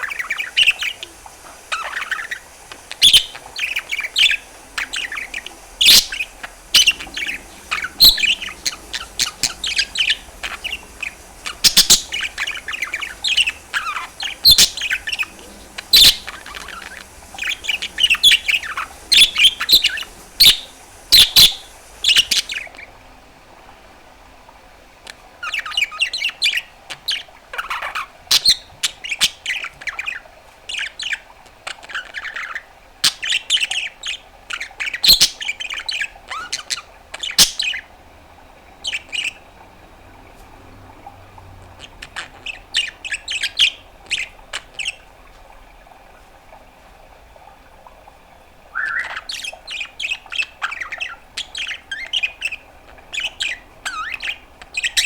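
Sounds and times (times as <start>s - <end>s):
budgerigar chattering and warbling: 0.0s - 22.6s, 48.8s - 55.0s.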